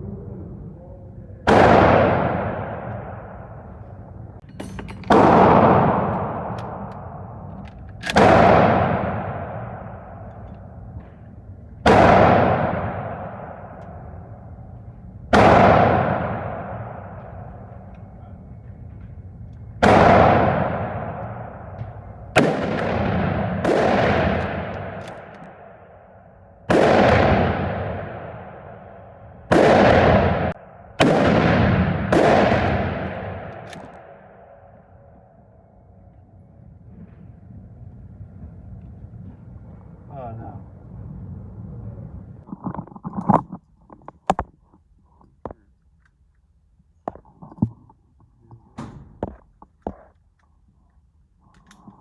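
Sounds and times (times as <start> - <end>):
rifle shots echoing: 1.4 - 18.5, 19.7 - 35.9.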